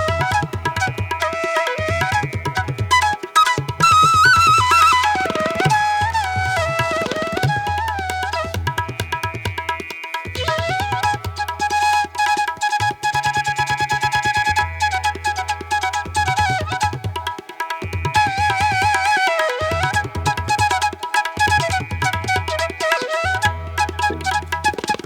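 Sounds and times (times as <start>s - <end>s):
fast hand drum beat: 0.0s - 11.2s, 23.8s - 25.0s.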